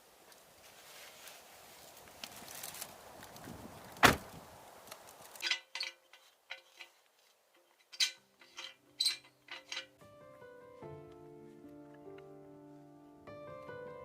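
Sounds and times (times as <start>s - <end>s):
light clinks of things handled: 4.9s - 10.0s
background music: 8.6s - 14.0s.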